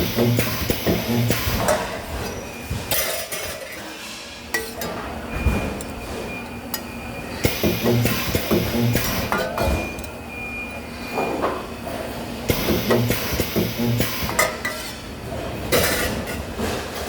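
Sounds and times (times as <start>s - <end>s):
spot welder buzzing: 0.0s - 1.8s, 7.4s - 10.0s, 12.5s - 14.4s.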